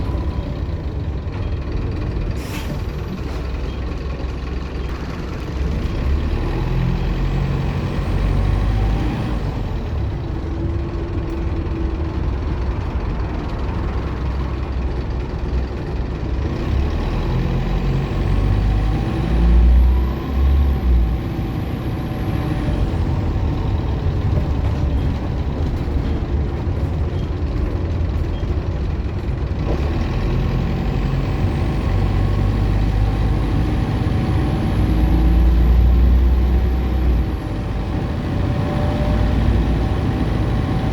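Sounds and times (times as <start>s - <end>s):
bus diesel engine rumble: 0.0s - 40.9s.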